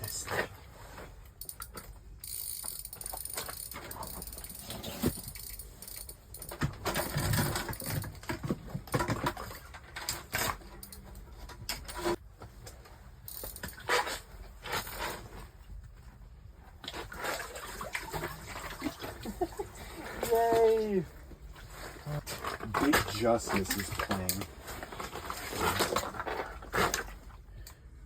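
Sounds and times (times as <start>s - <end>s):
fishing reel clicking: 1.4s - 4.6s, 5.2s - 6.6s, 13.3s - 13.7s.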